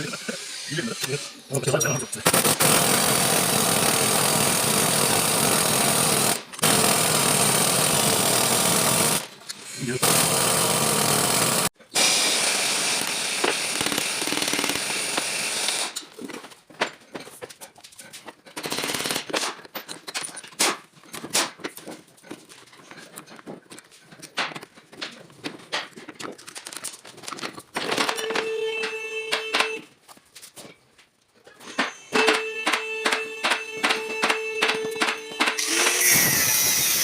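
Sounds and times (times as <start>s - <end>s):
power tool running: 2.2s - 16.0s, 31.6s - 37.0s
sharp metal clicks and knocks: 18.1s - 29.8s.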